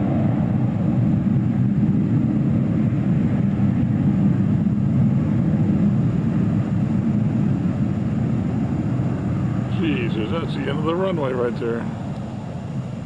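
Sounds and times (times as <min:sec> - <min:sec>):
jet engines rumbling: 0:00.0 - 0:13.0.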